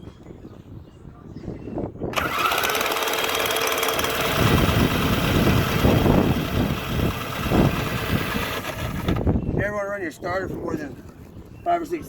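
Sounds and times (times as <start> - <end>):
lawnmower starter cranking engine: 2.1 - 9.3.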